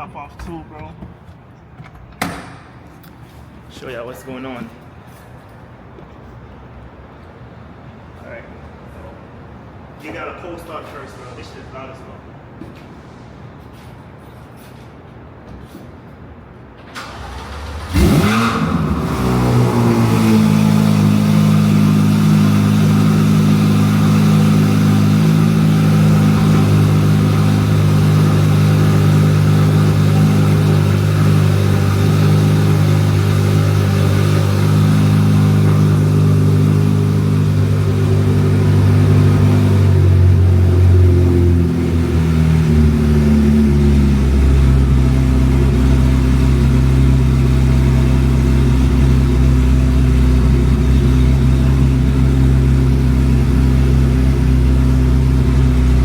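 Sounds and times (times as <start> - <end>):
car engine starting and idling: 16.7 - 56.0.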